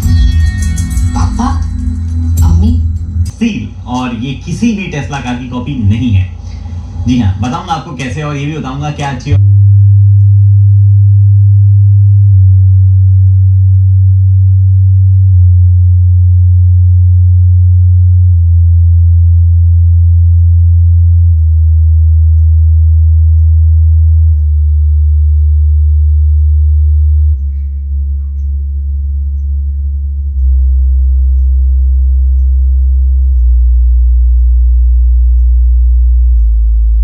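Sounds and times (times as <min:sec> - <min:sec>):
low bass test tones: 0:00.0 - 0:37.0.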